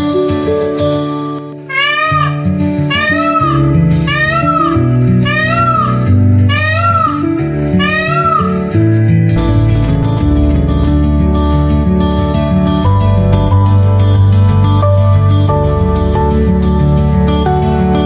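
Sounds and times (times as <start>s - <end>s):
peacock calling: 1.7s - 8.8s.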